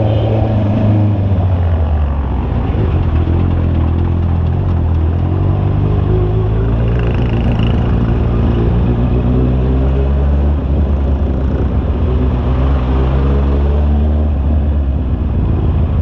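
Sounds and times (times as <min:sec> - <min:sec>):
motorcycle engine running: 0:00.0 - 0:09.5.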